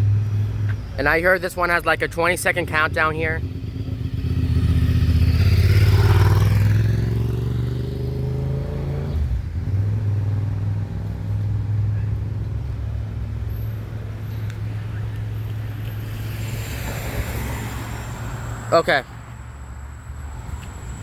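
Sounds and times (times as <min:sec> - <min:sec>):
low traffic engine rumble: 0:00.0 - 0:21.0
vehicle accelerating past: 0:03.4 - 0:12.7, 0:15.4 - 0:18.8.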